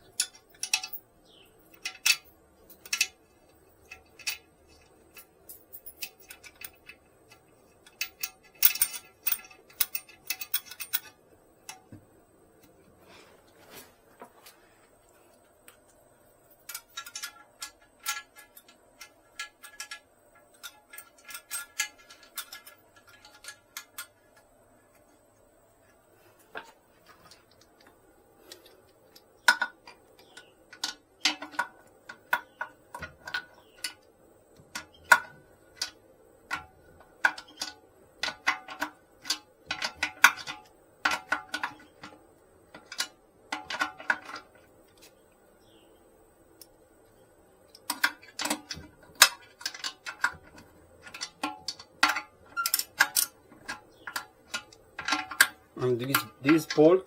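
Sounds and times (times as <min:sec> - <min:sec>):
wrench clicking on metal nuts: 0:00.0 - 0:11.9, 0:16.6 - 0:24.5, 0:47.7 - 0:57.0.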